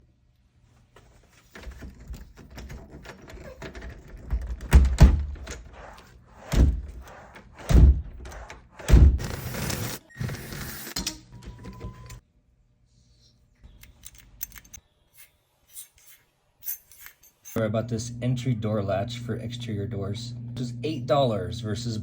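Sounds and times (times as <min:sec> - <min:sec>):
latch knocks and clicks: 0:01.8 - 0:05.7
door thunking against frame: 0:03.8 - 0:05.7, 0:07.6 - 0:09.2.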